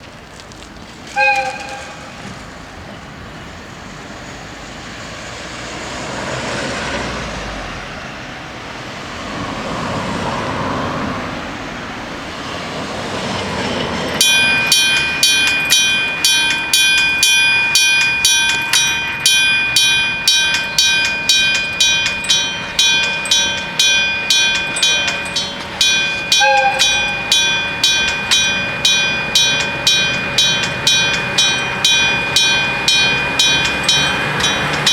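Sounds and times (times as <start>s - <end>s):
vehicles passing: 0.0s - 34.9s
locomotive horn blast: 1.1s - 2.4s, 25.2s - 32.0s
level-crossing warning bell: 1.2s - 4.8s, 13.0s - 34.9s.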